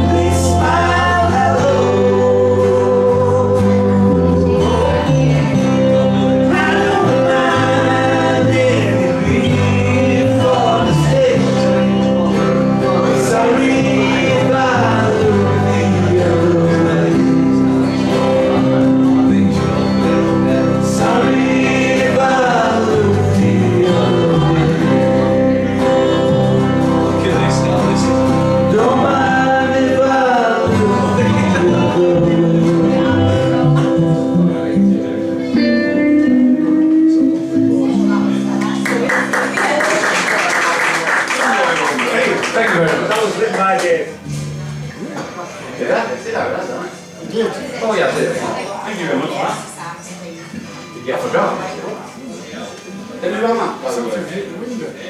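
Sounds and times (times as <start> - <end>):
man singing: 0.0 - 39.8
live band playing: 0.0 - 40.5.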